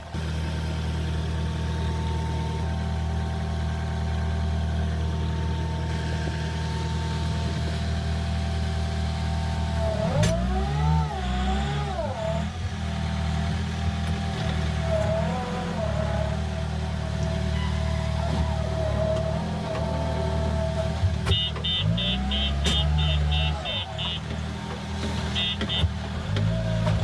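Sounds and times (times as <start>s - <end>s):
diesel engine revving: 0.0s - 27.0s.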